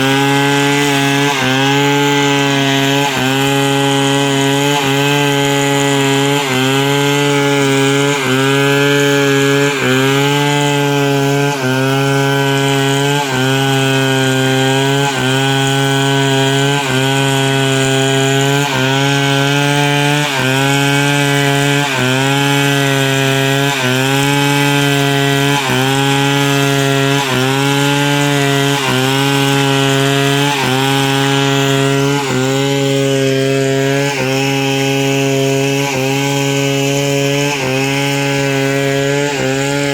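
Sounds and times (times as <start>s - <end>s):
chainsaw cutting log: 0.0s - 39.9s.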